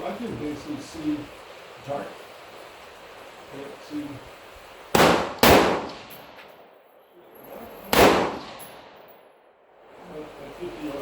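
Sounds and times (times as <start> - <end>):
rifle shots: 4.9 - 6.4, 7.9 - 9.1.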